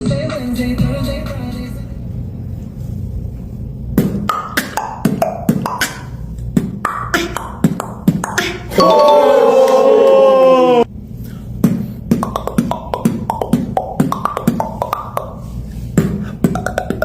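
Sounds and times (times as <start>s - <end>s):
beatboxing pops and clicks: 4.0s - 8.7s, 11.6s - 17.0s.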